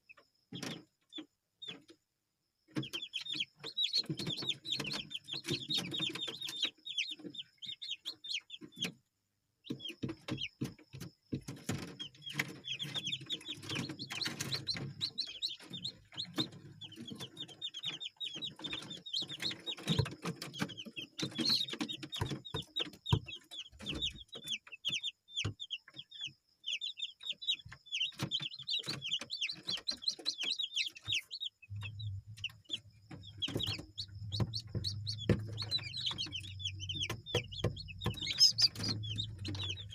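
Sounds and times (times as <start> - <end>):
chickens clucking and chirping: 0.0 - 39.9
low steady hum: 31.7 - 32.7.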